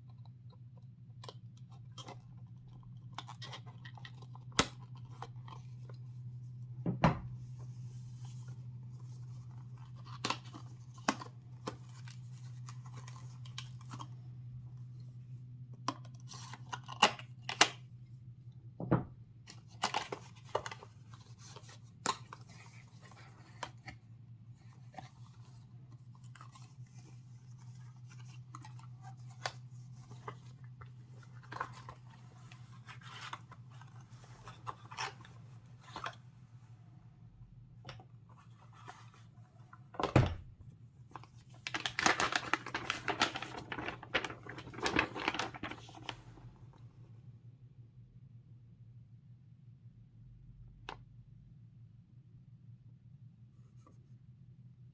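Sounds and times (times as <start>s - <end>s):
cards and packaging handled: 0.1s - 6.5s, 7.5s - 14.2s, 15.7s - 17.8s, 19.5s - 36.2s, 41.1s - 46.7s
packaging tearing: 41.6s - 46.2s.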